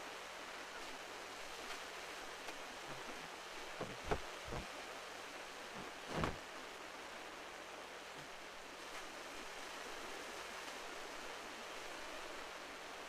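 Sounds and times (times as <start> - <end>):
surf breaking on shore: 2.8 - 4.7, 5.7 - 6.4
dull thumps: 2.9 - 4.7.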